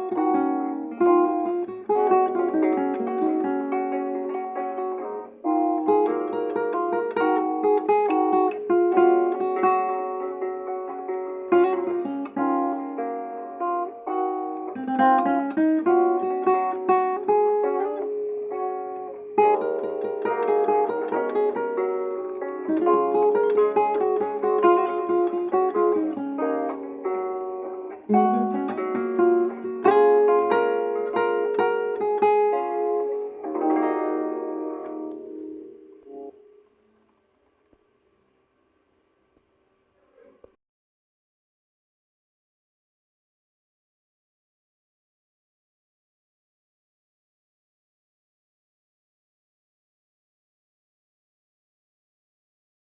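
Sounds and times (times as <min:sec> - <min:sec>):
guitar plucking and strumming: 0:00.0 - 0:37.1.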